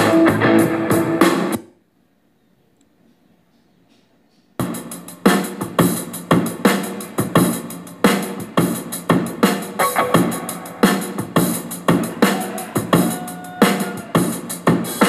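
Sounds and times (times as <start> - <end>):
music with drum-machine beat: 0.0 - 1.6, 4.4 - 15.0.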